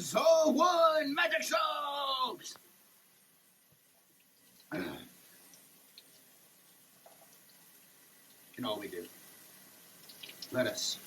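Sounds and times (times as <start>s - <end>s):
low steady hiss: 0.0s - 11.0s
water dripping in shower: 3.5s - 11.0s.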